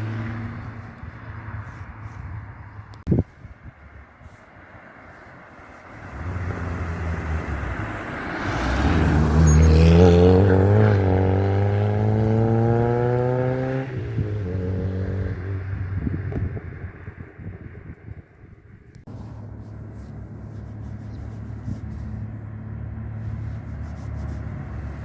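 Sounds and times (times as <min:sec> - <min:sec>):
car engine accelerating past: 0:05.8 - 0:17.6.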